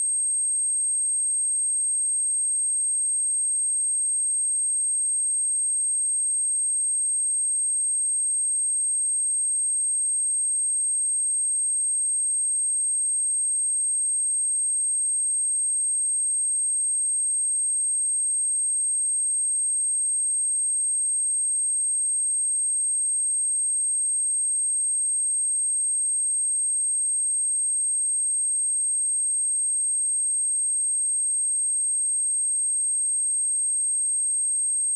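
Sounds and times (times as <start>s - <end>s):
high-pitched sine-wave test tone: 0.0s - 34.9s.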